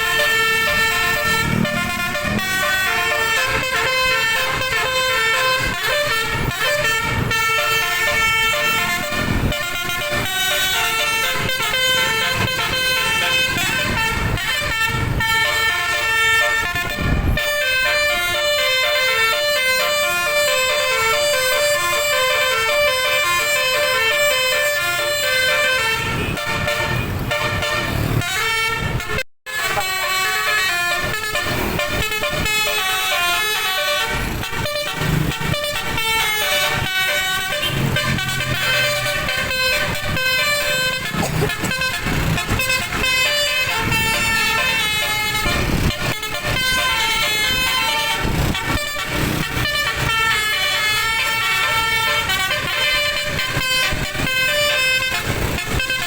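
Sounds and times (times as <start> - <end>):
bus air horn playing a tune: 0.0 - 56.0
rough noise: 36.8 - 52.5.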